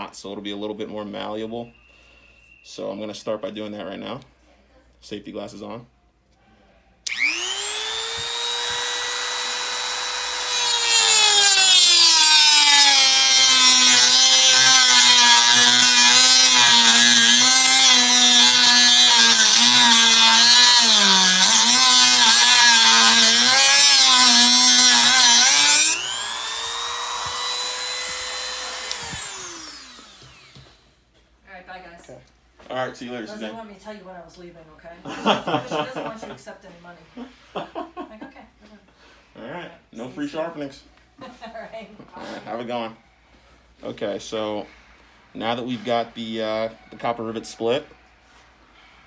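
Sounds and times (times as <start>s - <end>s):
rotary tool grinding metal: 7.1s - 30.6s.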